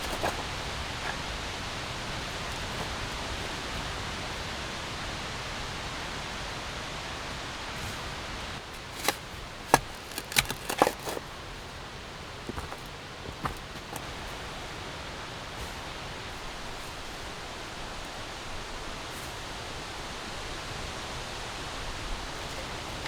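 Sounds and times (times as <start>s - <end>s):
sharp clicks and knocks: 9.0s - 11.2s.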